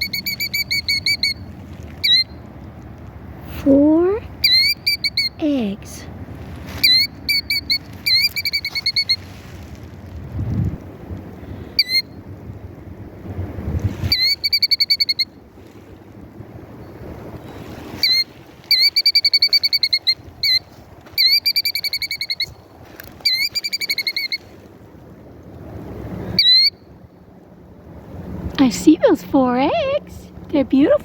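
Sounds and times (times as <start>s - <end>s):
bird alarm calls with trill: 0.0s - 1.4s, 2.0s - 2.3s, 4.4s - 5.4s, 6.8s - 9.2s, 14.1s - 15.3s, 23.2s - 24.4s, 26.4s - 26.8s
wind rumble on microphone: 5.6s - 14.6s, 15.2s - 18.8s, 21.9s - 31.0s.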